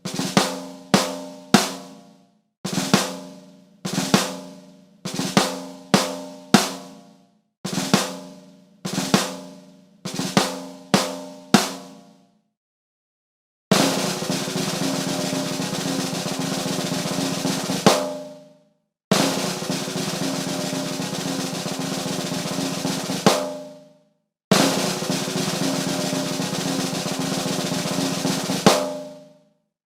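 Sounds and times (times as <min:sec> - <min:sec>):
snare drum roll: 0:00.0 - 0:02.0, 0:02.7 - 0:07.0, 0:07.7 - 0:12.0, 0:13.7 - 0:18.4, 0:19.1 - 0:23.8, 0:24.5 - 0:29.3
accented snare hit ringing: 0:13.8 - 0:18.4, 0:19.1 - 0:23.9, 0:24.5 - 0:29.3.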